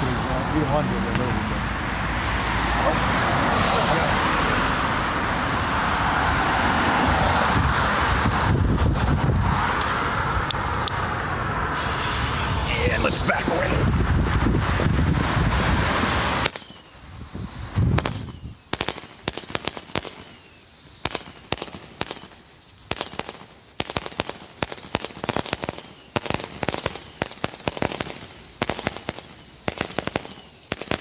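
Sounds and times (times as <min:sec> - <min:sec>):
sharp firework cracks: 0:11.7 - 0:14.4, 0:15.2 - 0:31.0
firework whistles falling in pitch: 0:11.8 - 0:13.7, 0:16.4 - 0:31.0.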